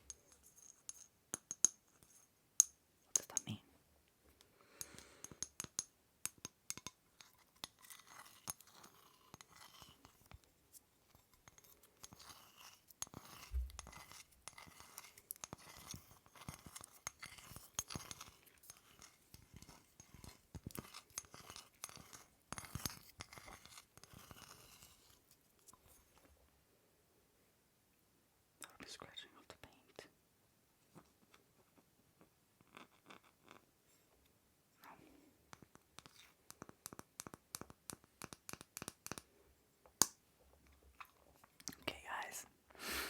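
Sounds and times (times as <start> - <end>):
small objects clicking and tapping: 0.0 - 3.6, 4.3 - 10.5, 11.1 - 26.3, 35.5 - 41.8.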